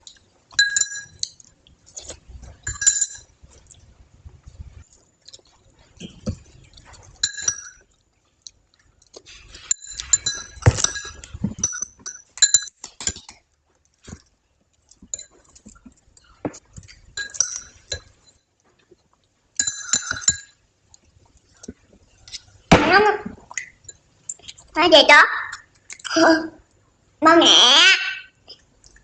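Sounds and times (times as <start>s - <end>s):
clinking on a dish: 0.5s - 1.4s, 2.6s - 3.3s, 7.2s - 7.8s, 17.2s - 18.4s, 19.6s - 20.6s.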